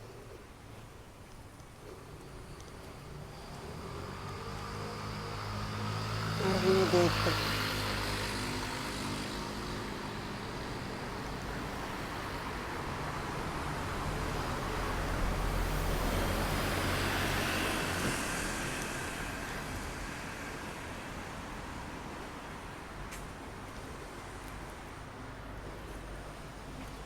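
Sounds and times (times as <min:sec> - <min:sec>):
road traffic rushing: 0:03.0 - 0:26.8
vehicle passing close: 0:03.1 - 0:12.5.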